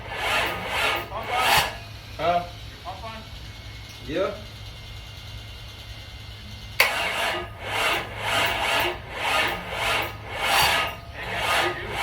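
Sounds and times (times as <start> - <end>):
engine starter cranking slowly: 6.8 - 12.0.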